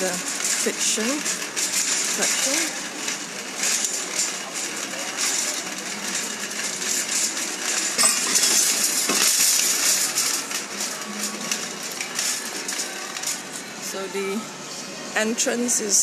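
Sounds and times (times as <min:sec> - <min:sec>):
metal shopping trolley rattling: 0:00.0 - 0:14.4.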